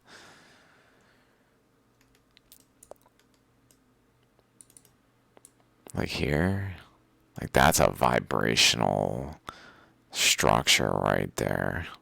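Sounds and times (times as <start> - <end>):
faint steady hum: 0.0 - 12.0
faint scattered clicks: 1.9 - 5.7.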